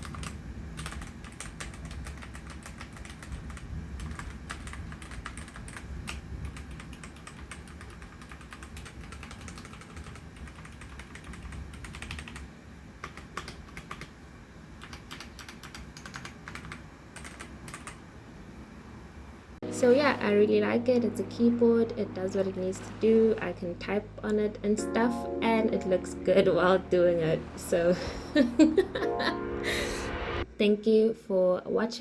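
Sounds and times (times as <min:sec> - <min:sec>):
mechanical keyboard typing: 0:00.0 - 0:14.2, 0:14.8 - 0:18.0.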